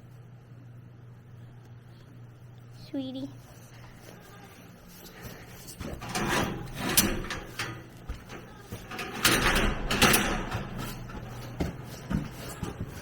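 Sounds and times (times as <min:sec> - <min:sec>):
steady low hum: 0:00.0 - 0:13.0
rustling and clattering: 0:04.8 - 0:13.0.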